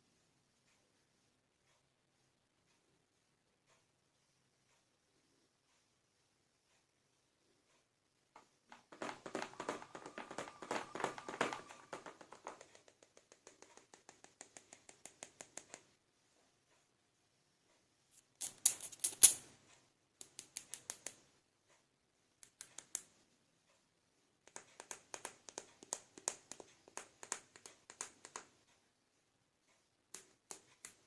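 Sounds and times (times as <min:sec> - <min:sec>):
plastic toy pieces clicking: 0:18.4 - 0:19.4.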